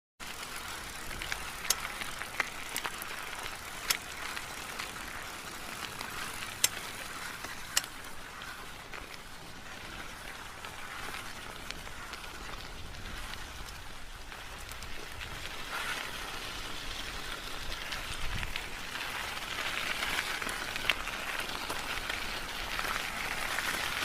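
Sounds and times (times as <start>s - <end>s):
bicycle tyres and drivetrain rolling: 0.2s - 24.0s.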